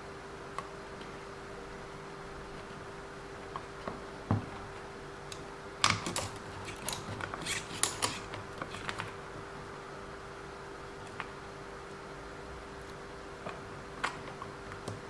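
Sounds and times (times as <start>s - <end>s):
faint steady hum: 0.0s - 15.0s
small tools clicking and clattering: 5.8s - 9.1s.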